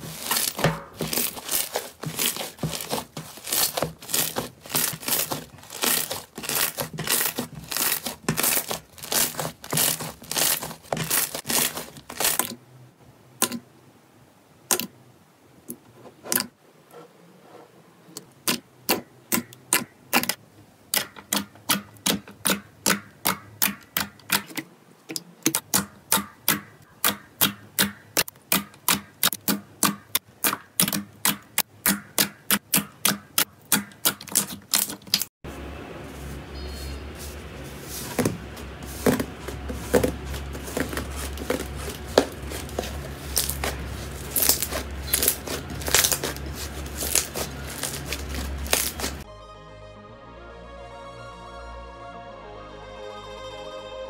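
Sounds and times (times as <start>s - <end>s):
slime popping: 0.1s - 12.5s, 39.9s - 49.2s.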